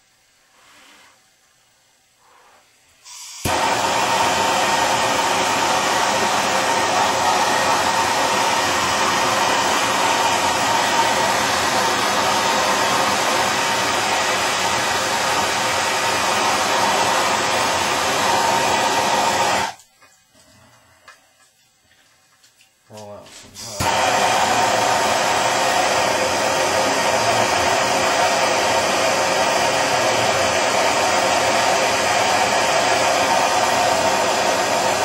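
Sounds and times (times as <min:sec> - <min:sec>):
torch flame roaring: 0:03.4 - 0:19.8, 0:23.6 - 0:35.0.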